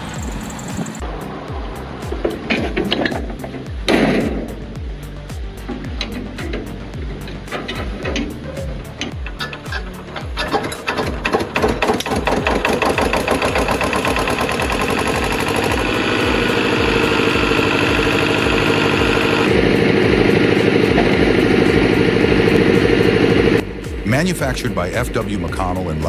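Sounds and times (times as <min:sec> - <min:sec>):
machine engine running: 0:05.7 - 0:25.6.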